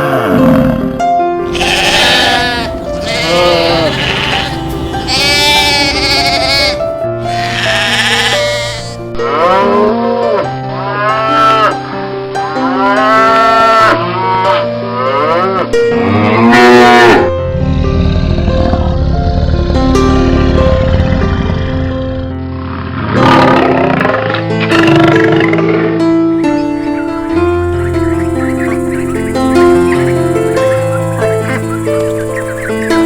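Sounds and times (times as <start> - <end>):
background music with held notes: 0.0 - 33.0
sheep bleating: 1.4 - 9.9.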